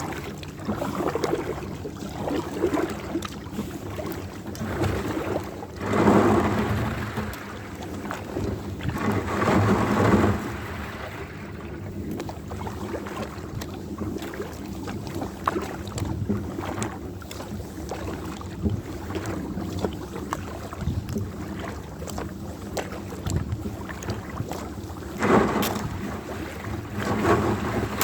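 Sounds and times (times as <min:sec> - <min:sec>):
water sloshing around kayak: 0:00.0 - 0:28.0.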